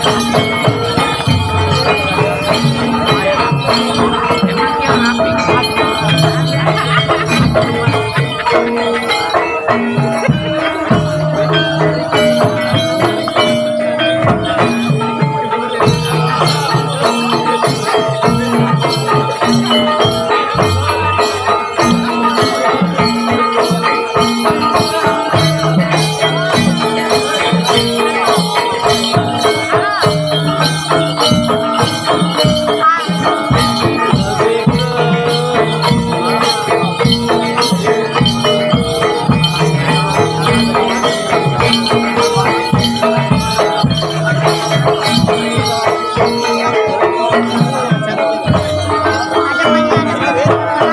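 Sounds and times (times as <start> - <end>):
drums: 0.0 - 50.9
rattling jingling percussion: 0.0 - 50.9
tuned metal percussion: 0.0 - 50.9.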